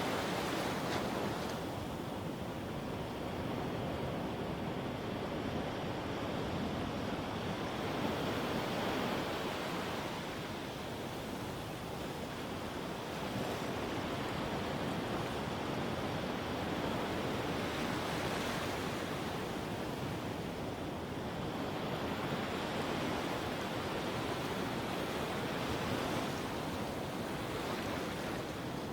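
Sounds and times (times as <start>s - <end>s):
surf washing over sand: 0.0s - 5.3s.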